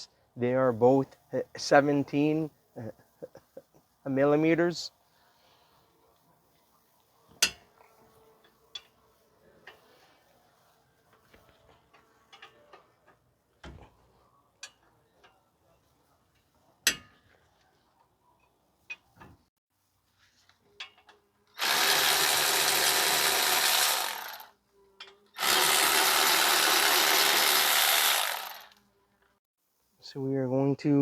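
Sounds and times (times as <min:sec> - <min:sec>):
power wrench running: 0:21.6 - 0:24.5, 0:25.4 - 0:28.8.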